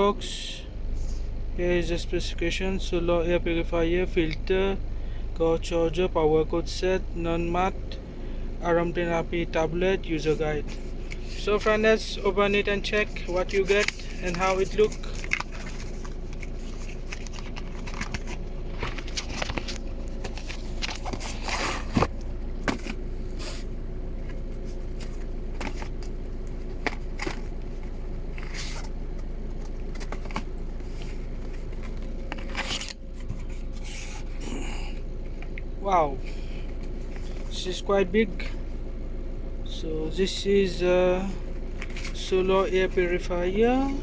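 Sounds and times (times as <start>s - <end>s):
faint steady hum: 0.0s - 44.0s
cardboard box packaging handled: 12.5s - 34.3s.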